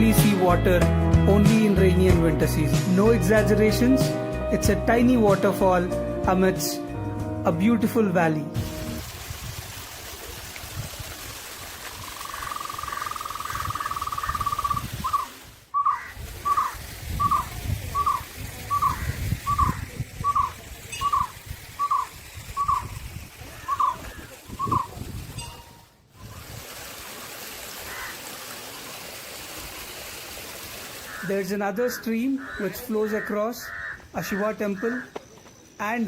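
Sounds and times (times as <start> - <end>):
flowing water rushing: 8.6 - 32.0
bird calling: 12.0 - 25.6, 27.9 - 28.2, 31.0 - 35.8.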